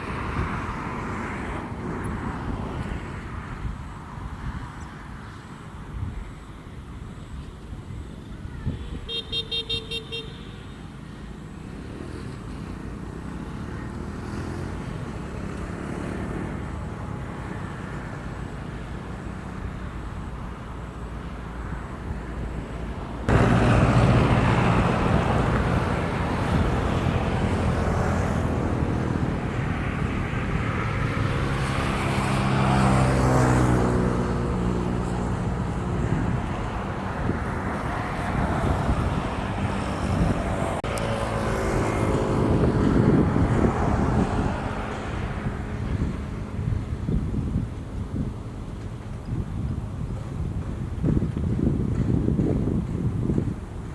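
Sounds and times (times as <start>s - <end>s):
traffic noise: 0.0s - 53.9s
pulsing horn toot: 8.7s - 10.8s.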